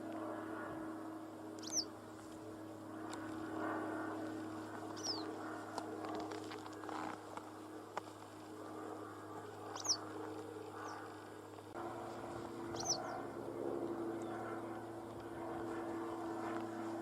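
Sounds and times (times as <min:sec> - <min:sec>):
steady low hum: 0:00.0 - 0:17.0
songbird chirping: 0:01.6 - 0:01.9, 0:09.7 - 0:10.1, 0:12.7 - 0:13.2.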